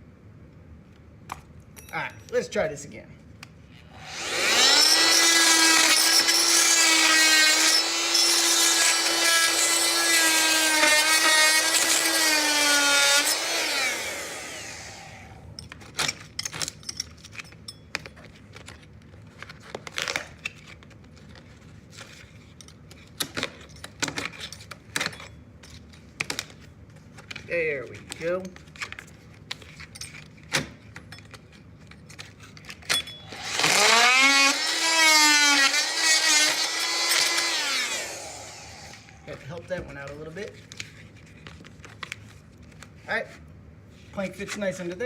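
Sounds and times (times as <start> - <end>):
oscillating multi-tool buzzing: 4.0 - 15.4, 33.2 - 39.2.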